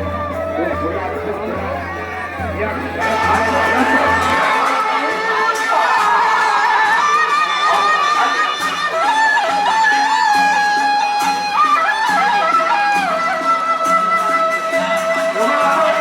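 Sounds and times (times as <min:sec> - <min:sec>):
reedy wind instrument melody: 0:00.0 - 0:16.0.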